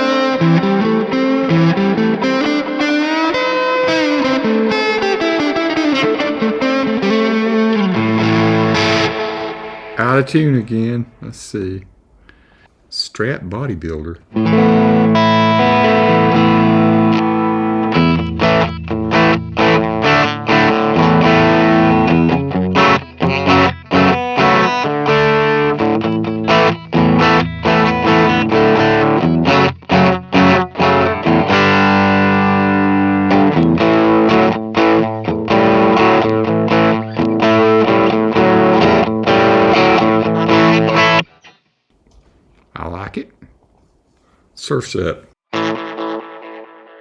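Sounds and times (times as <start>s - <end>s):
distorted electric guitar: 0.0s - 12.2s.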